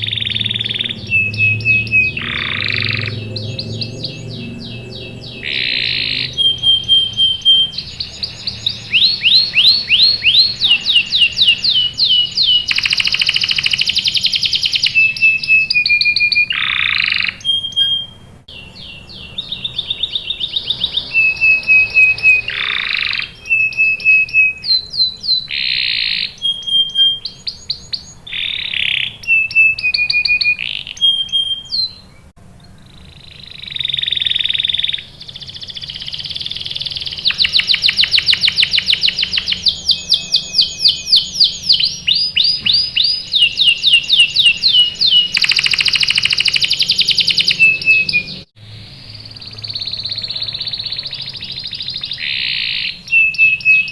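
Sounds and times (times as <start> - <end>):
canary singing trills and chirps: 0.0 - 53.9.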